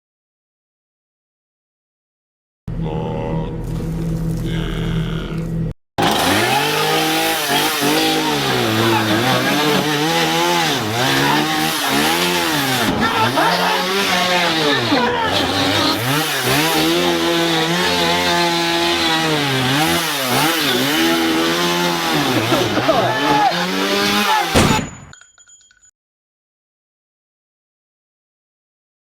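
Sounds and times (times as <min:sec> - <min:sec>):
small engine revving: 0:06.0 - 0:24.6.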